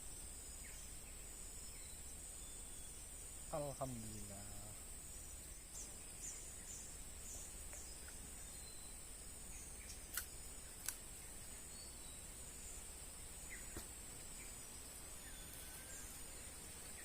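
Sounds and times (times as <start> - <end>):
faint bird chirps: 0.0 - 17.0
insects buzzing: 0.0 - 17.0
sharp clicks: 9.9 - 11.0.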